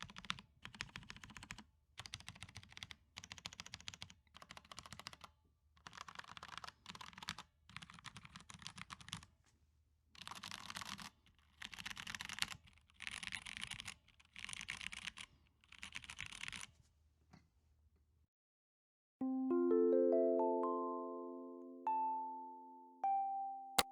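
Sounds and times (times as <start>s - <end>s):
mechanical keyboard typing: 0.0s - 9.3s, 10.2s - 16.7s.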